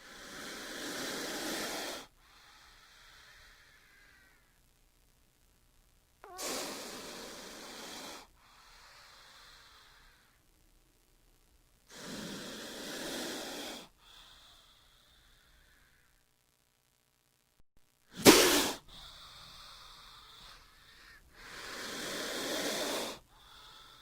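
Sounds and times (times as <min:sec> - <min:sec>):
snake hissing: 0:00.0 - 0:04.4, 0:06.2 - 0:10.4, 0:11.9 - 0:16.1, 0:18.1 - 0:24.0.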